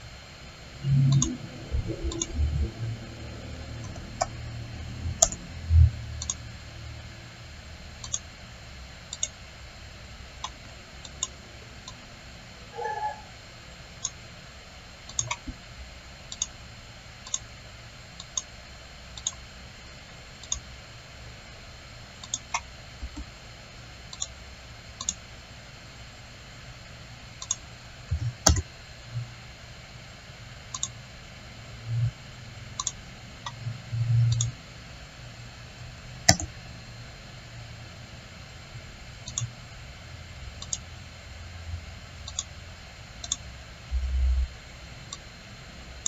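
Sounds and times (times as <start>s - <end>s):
steady low hum: 0.0s - 46.0s
computer mouse clicking: 0.9s - 2.4s, 3.8s - 4.3s, 5.2s - 5.4s, 6.2s - 6.4s, 8.0s - 8.3s, 9.1s - 9.4s, 10.4s - 12.0s, 15.1s - 15.6s, 16.3s - 16.5s, 17.2s - 17.5s, 18.2s - 18.5s, 19.2s - 19.4s, 20.4s - 20.6s, 22.2s - 23.2s, 24.1s - 24.4s, 25.0s - 25.2s, 27.4s - 27.6s, 28.4s - 28.7s, 30.7s - 31.0s, 32.8s - 33.6s, 34.3s - 34.6s, 36.3s - 36.5s, 39.2s - 39.5s, 40.6s - 40.9s, 42.2s - 42.5s, 43.2s - 43.4s.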